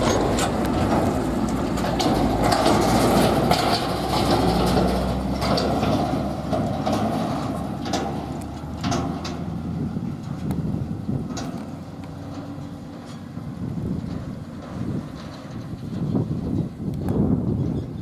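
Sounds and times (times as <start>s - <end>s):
knocks and rattles: 0.0s - 17.2s
harvester and tractor engines: 0.0s - 18.0s.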